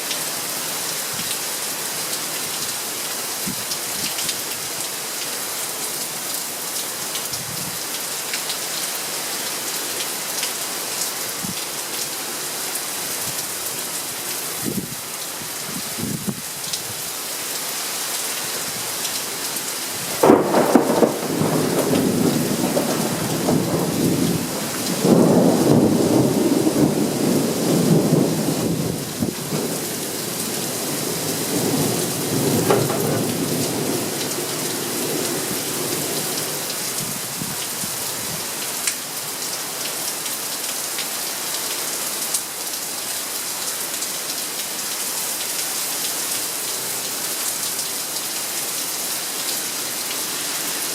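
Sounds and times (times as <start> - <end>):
steady rain: 0.0 - 50.9
thunderclap and rumble: 20.1 - 36.4.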